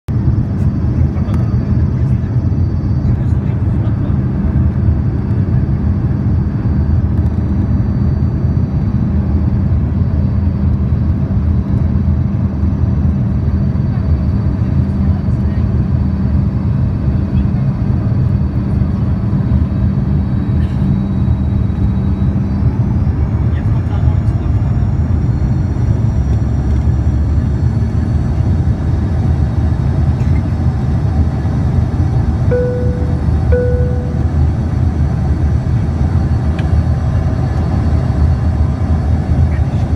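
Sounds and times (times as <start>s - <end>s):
jet engines rumbling: 0.1s - 39.9s
turbofan whine: 0.1s - 39.9s
faint high tones: 32.5s - 34.4s.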